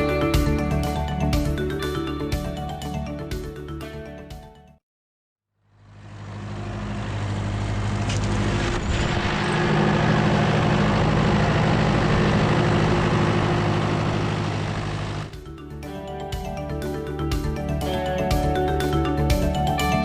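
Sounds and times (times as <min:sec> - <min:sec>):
diesel engine running: 0:05.8 - 0:15.4.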